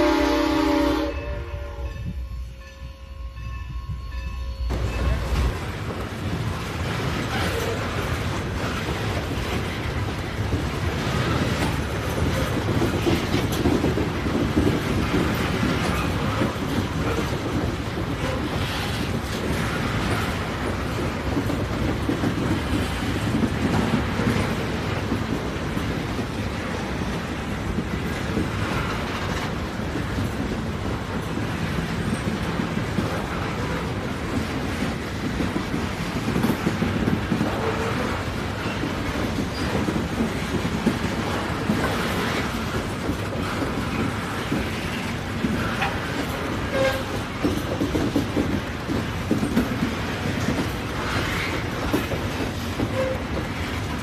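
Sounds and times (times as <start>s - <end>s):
train whistle: 0.0s - 4.2s, 46.7s - 47.2s, 52.9s - 53.3s
train wheels clattering on rails: 0.0s - 54.0s.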